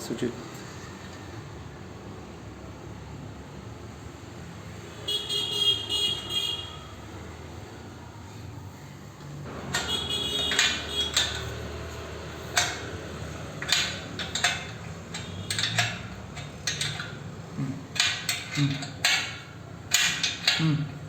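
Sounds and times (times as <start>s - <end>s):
metal parts clinking and knocking: 9.6s - 20.7s.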